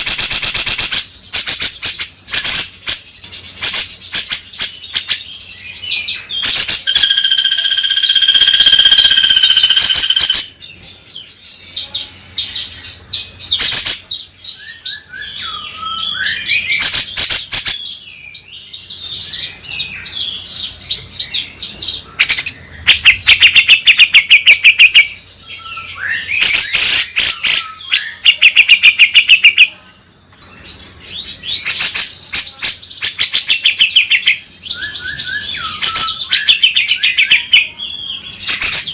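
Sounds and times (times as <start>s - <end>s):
bird whistling and chattering: 3.6s - 10.6s, 13.5s - 18.0s, 22.2s - 29.8s, 30.8s - 38.9s.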